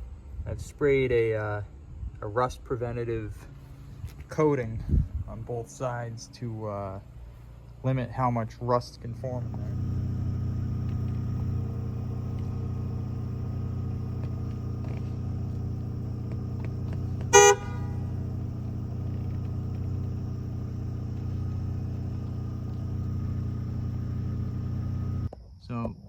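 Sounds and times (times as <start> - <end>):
engine rumbling: 1.7 - 25.3
vehicle horn toot: 17.2 - 18.8.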